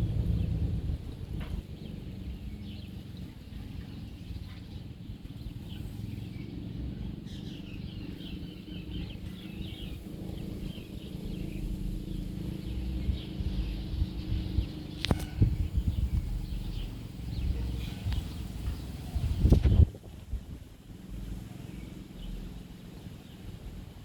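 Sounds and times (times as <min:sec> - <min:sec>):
small birds chirping: 0:00.0 - 0:24.0
steady low rumble: 0:00.0 - 0:24.0.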